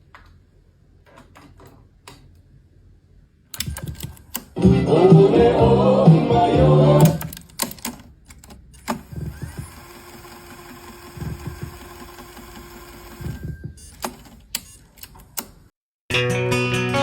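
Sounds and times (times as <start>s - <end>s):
small motor running: 8.9s - 13.5s.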